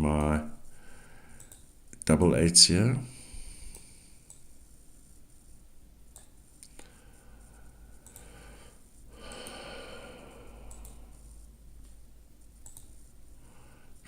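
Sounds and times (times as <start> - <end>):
person breathing: 0.6 - 1.5, 3.1 - 4.3, 6.7 - 11.5, 13.3 - 14.0
faint clicks: 1.4 - 2.1, 6.1 - 7.0, 8.0 - 8.3, 10.6 - 13.0.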